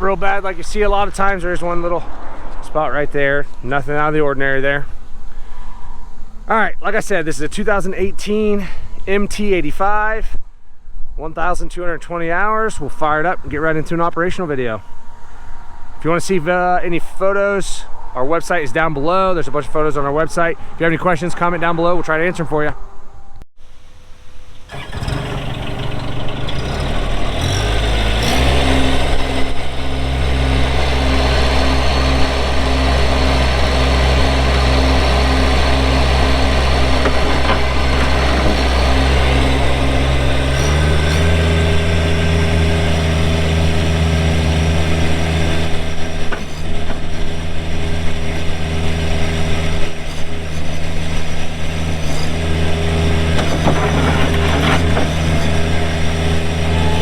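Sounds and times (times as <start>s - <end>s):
diesel engine starting and idling: 24.4s - 57.0s
engine revving higher: 24.7s - 57.0s.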